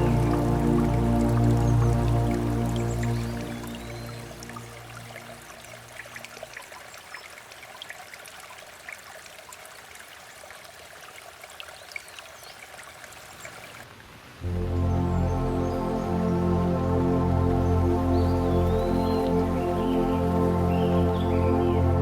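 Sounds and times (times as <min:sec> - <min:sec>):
soft ambient music: 0:00.0 - 0:06.4, 0:14.4 - 0:22.0
water drips: 0:00.0 - 0:21.7
water trickling: 0:00.0 - 0:22.0.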